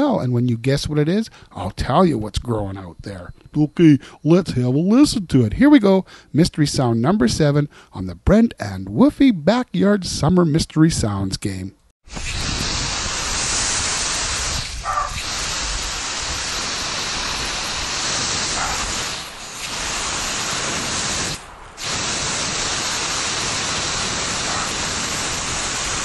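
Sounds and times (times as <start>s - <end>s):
water spraying from hose: 12.0s - 26.0s.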